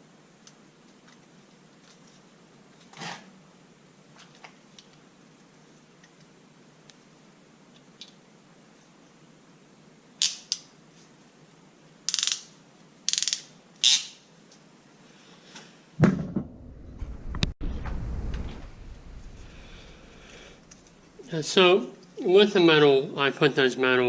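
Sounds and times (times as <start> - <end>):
loud thump: 16.0 - 19.6.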